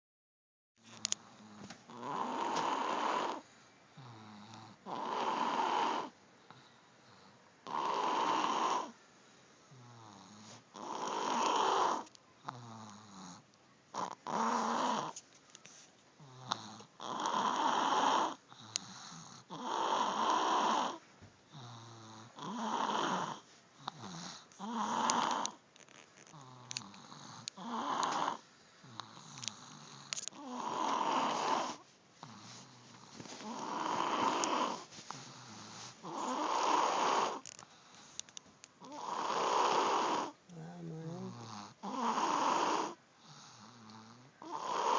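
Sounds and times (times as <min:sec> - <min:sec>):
low buzzing snore: 0:00.9 - 0:09.0, 0:09.6 - 0:15.2, 0:16.2 - 0:38.2, 0:38.8 - 0:44.9
rasping snoring breath: 0:01.0 - 0:03.4, 0:04.0 - 0:09.0, 0:09.7 - 0:13.4, 0:14.0 - 0:15.2, 0:16.2 - 0:25.6, 0:26.3 - 0:44.9.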